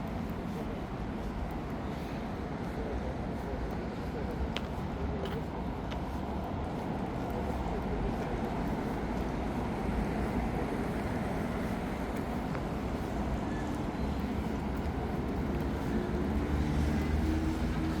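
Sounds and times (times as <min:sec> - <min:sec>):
cars driving past: 0:14.5 - 0:18.0.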